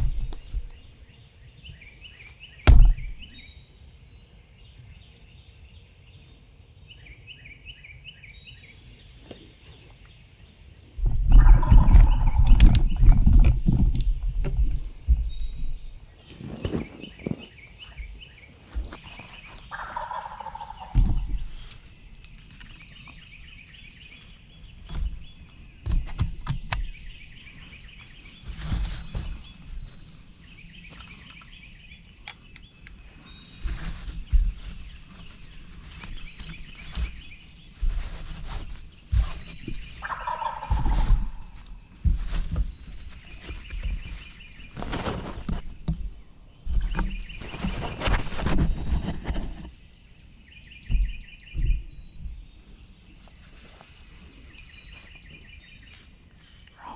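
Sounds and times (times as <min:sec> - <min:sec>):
low thumps: 0:00.0 - 0:01.0, 0:02.6 - 0:03.4, 0:11.0 - 0:17.0, 0:20.8 - 0:22.2, 0:33.6 - 0:49.7, 0:50.9 - 0:52.6
turkey gobbling: 0:11.4 - 0:12.6, 0:19.7 - 0:21.4, 0:39.9 - 0:41.6.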